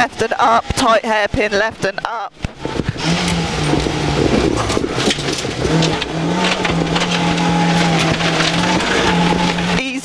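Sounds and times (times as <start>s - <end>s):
car engine under load: 0.0s - 10.0s
car knocks and rattles: 2.4s - 10.0s.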